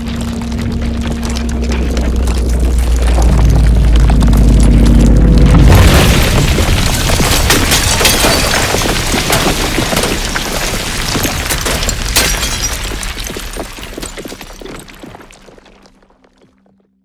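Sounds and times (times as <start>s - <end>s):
stones and debris clattering: 0.0s - 16.5s
heavy crash: 2.4s - 14.1s.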